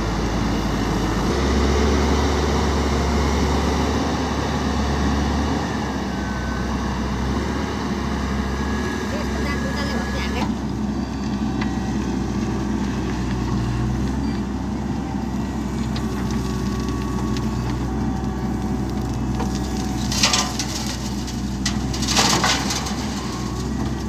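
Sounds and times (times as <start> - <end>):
diesel engine running: 0.0 - 24.0
dirt spilling crunch: 15.3 - 24.0.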